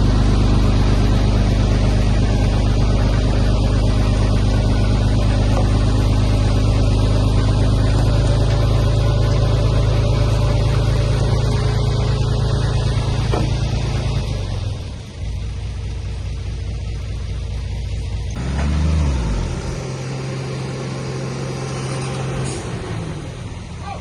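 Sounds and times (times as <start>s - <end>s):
heavy diesel engine drone: 0.0s - 24.0s.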